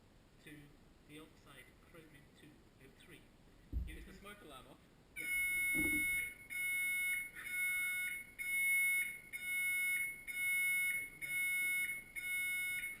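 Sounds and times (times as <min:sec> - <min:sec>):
smoke alarm beeping: 0:05.2 - 0:13.0.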